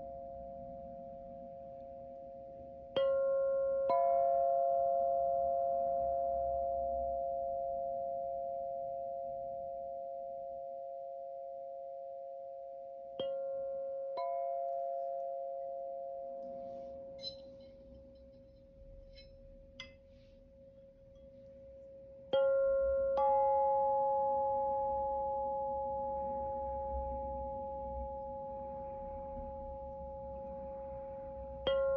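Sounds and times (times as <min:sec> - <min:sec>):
singing bowls ringing: 0:12.7 - 0:20.0, 0:22.3 - 0:31.9.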